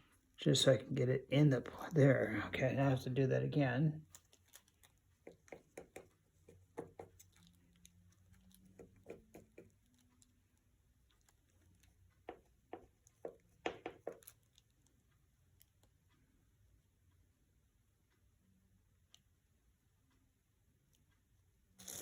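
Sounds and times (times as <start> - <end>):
light taps and clicks: 11.1 - 15.0.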